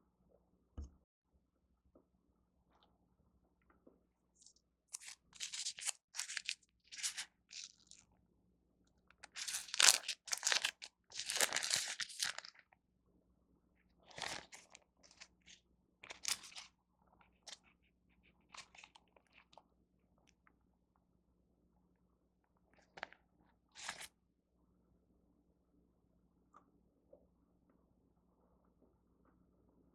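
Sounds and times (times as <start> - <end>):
plastic wrapper crinkling: 4.9 - 8.0, 9.2 - 12.6, 23.8 - 24.1.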